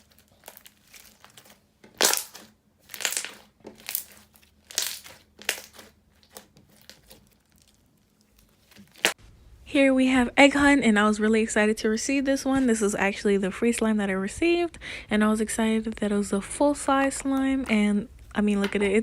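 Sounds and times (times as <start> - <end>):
slime being squished by hand: 0.0 - 9.2.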